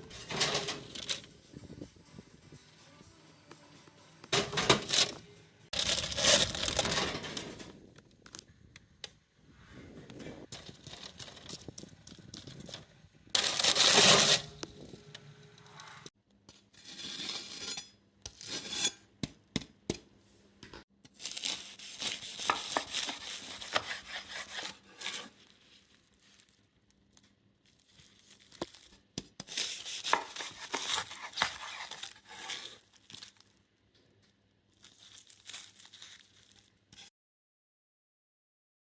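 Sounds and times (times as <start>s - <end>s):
pastry crackling and crunching: 5.8s - 9.0s, 21.1s - 37.1s.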